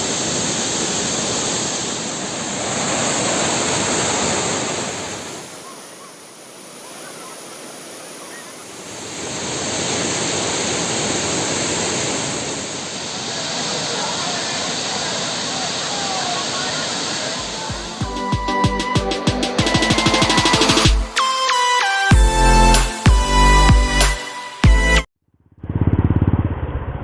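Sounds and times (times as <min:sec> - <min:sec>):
waterfall rushing water: 0:00.0 - 0:18.2.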